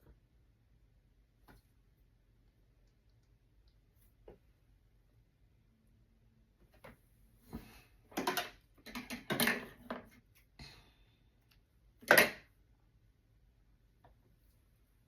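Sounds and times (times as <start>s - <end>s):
objects knocking and rattling: 8.1s - 10.2s.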